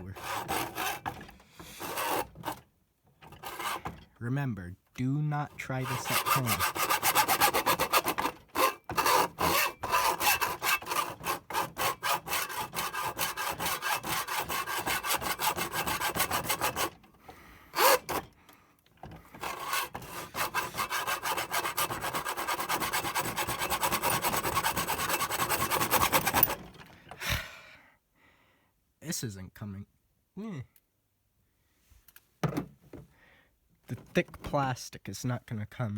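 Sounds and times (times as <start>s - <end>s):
hand saw cutting plastic: 0.0s - 4.1s, 5.0s - 18.4s, 19.0s - 27.3s.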